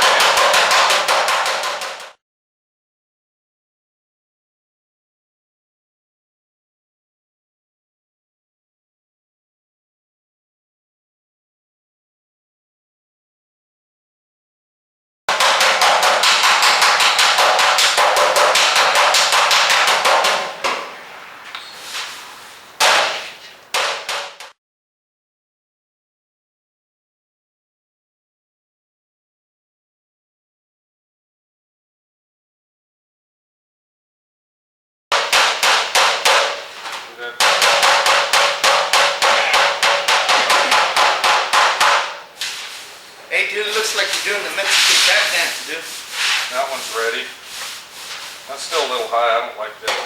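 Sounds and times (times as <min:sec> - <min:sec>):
hammer tapping sheet metal: 0:00.0 - 0:02.2, 0:15.3 - 0:21.8, 0:22.8 - 0:24.6, 0:35.1 - 0:42.9.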